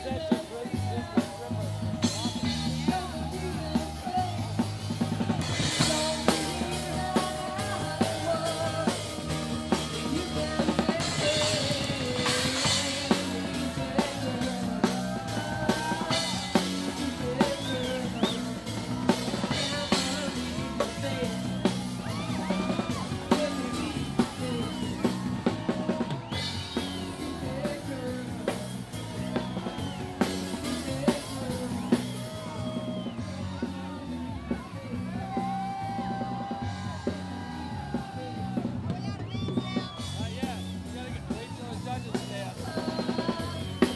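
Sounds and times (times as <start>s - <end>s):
person singing: 0.0s - 32.9s, 42.6s - 43.9s
drum kit beat: 0.0s - 43.9s.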